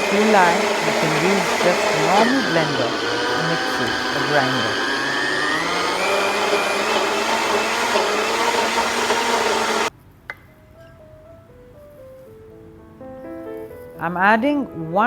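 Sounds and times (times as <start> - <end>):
blender click: 0.0 - 9.9
blender running: 0.0 - 9.9.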